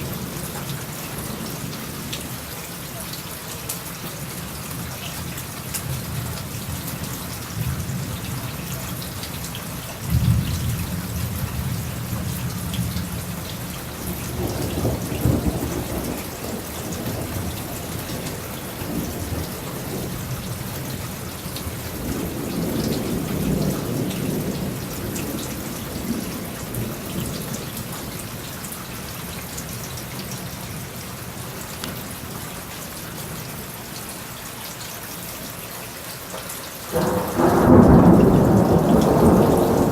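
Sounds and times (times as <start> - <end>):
steady rain: 0.0 - 39.9
thunder: 10.1 - 28.3, 36.9 - 39.9.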